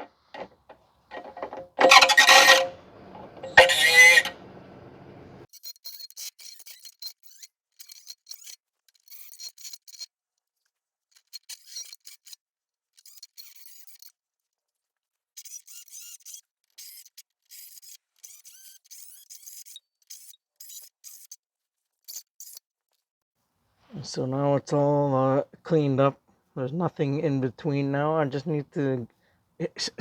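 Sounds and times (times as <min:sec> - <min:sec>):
scraping rusty metal pipe: 0:00.0 - 0:05.4.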